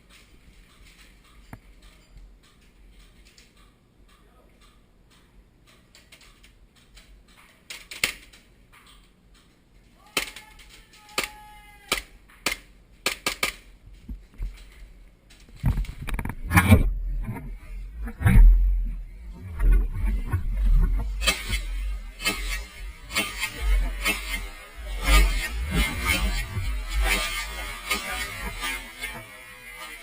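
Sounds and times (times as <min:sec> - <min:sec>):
airsoft pistol shots: 0:21.2 - 0:28.0.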